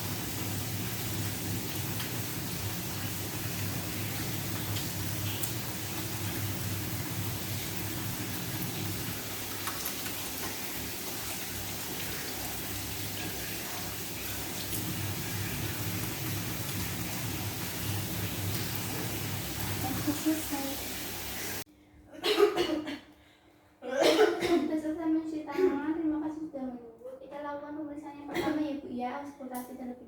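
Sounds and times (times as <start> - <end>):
tap water running into sink: 0.0 - 21.6.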